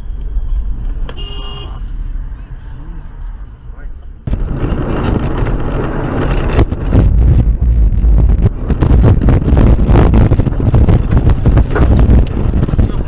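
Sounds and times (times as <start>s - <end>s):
road rumble: 0.0s - 13.0s
wind buffeting microphone: 4.2s - 13.0s.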